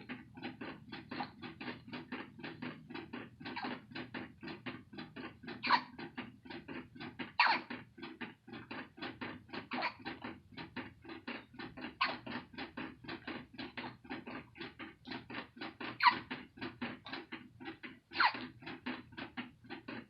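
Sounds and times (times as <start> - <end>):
fast patter of soft clicks: 0.0 - 20.0
baby hiccupping: 3.5 - 3.8, 5.6 - 6.0, 7.4 - 7.7, 9.7 - 10.2, 12.0 - 12.3, 16.0 - 16.3, 18.1 - 18.5.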